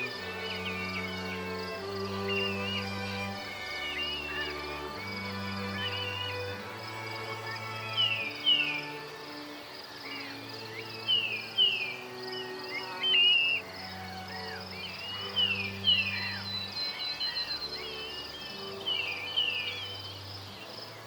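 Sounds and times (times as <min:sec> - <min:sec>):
crickets chirring: 0:00.0 - 0:21.0
nightingale singing: 0:00.0 - 0:21.0.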